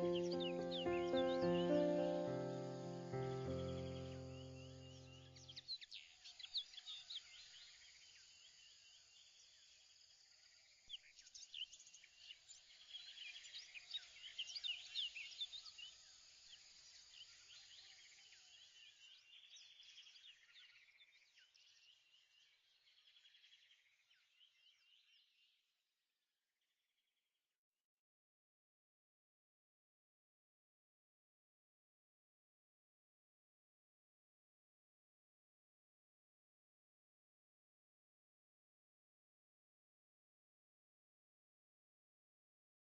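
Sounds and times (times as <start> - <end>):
high chirping birdsong: 0.0 - 7.8.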